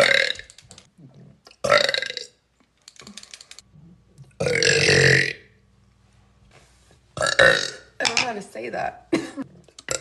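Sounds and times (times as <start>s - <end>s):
woman burping loudly: 0.0s - 0.4s, 1.6s - 2.3s, 4.4s - 5.4s, 7.2s - 7.9s, 9.1s - 10.0s.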